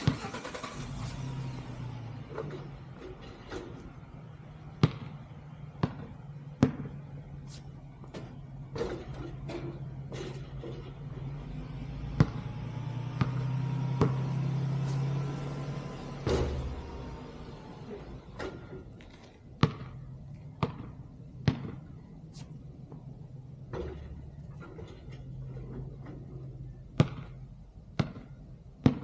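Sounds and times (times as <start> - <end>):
basketball bouncing: 4.5 - 7.2, 8.0 - 11.2, 12.1 - 12.5, 13.1 - 15.2, 18.4 - 22.0, 22.8 - 29.0.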